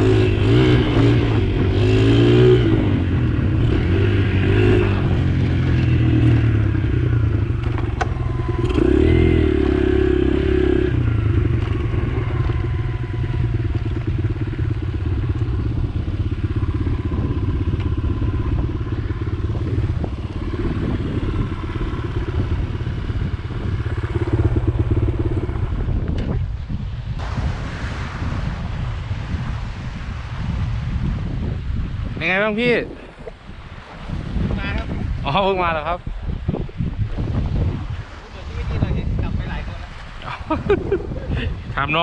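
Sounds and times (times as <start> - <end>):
motorcycle engine running: 0.0 - 27.4.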